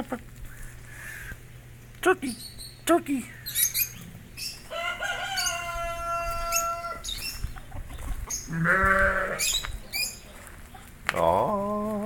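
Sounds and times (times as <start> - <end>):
small birds chirping: 0.4 - 11.8
rooster crowing: 4.7 - 7.2.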